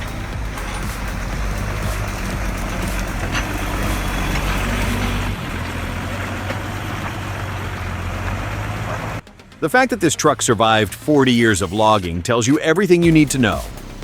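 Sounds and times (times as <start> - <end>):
truck engine running under load: 0.0 - 9.2
road and mechanical noise: 0.0 - 14.0.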